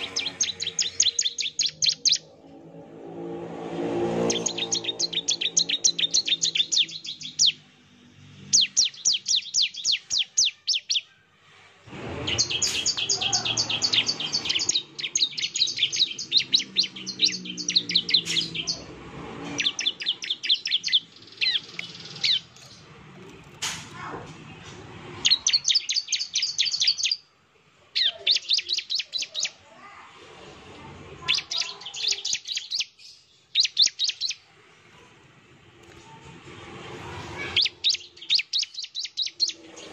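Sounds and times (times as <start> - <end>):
bird singing rapid rattling notes: 0.0 - 2.8, 4.1 - 11.1, 12.2 - 23.4, 25.1 - 27.2, 28.0 - 29.5, 31.2 - 34.4, 37.5 - 39.9.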